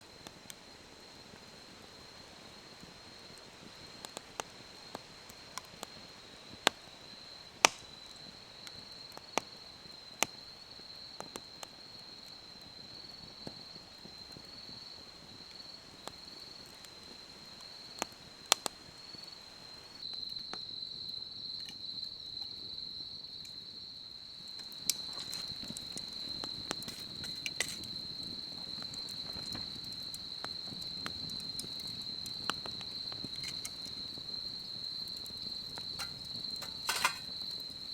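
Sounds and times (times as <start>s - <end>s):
sharp snaps and clicks: 7.6s - 7.9s, 24.6s - 34.0s.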